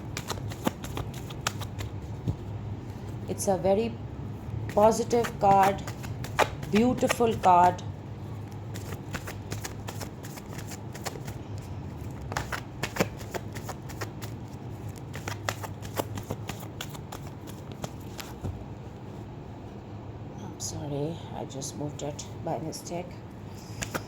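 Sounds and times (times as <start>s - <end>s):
cards being shuffled by hand: 0.0s - 3.3s, 4.7s - 7.8s, 8.4s - 18.7s, 23.7s - 24.0s.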